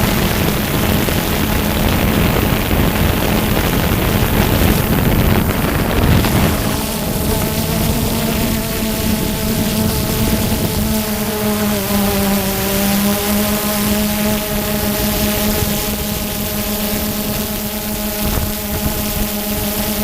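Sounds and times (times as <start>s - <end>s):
quadcopter motors humming: 0.0s - 20.0s
wind noise on microphone: 0.0s - 20.0s.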